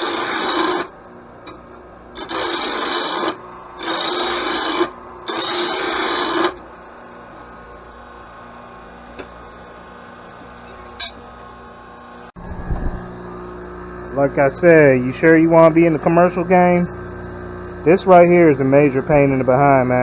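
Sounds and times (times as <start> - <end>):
mower blade being sharpened: 0.0 - 0.9, 2.2 - 6.6.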